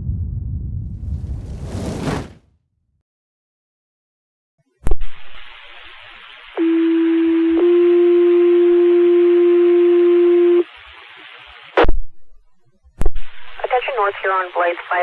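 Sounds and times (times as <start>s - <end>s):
radio static hiss: 4.8s - 15.0s.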